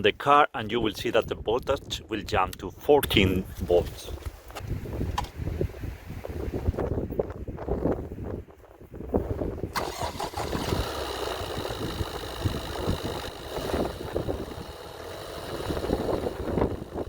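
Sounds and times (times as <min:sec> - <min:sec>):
diesel engine starting and idling: 0:09.7 - 0:17.0
steady high whine: 0:10.3 - 0:17.0.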